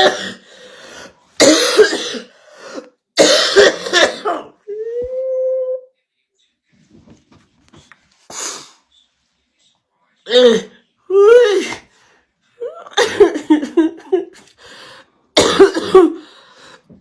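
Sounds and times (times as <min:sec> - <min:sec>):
woman coughing hard: 0:00.0 - 0:00.5, 0:01.4 - 0:02.4, 0:03.2 - 0:04.6, 0:12.8 - 0:14.4, 0:15.4 - 0:16.3.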